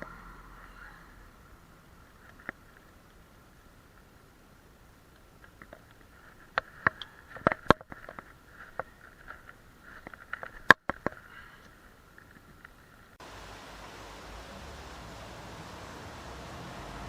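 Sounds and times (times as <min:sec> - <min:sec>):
faint steady hiss: 0:00.0 - 0:17.0
sharp clicks and knocks: 0:05.1 - 0:11.3.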